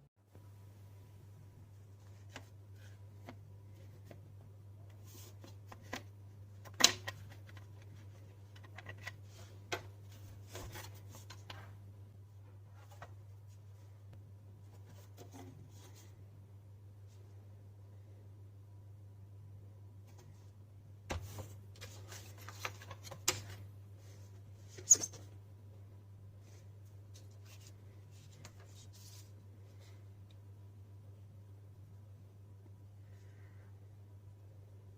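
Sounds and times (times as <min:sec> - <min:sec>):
plastic parts clicking and rubbing: 0:04.9 - 0:09.9.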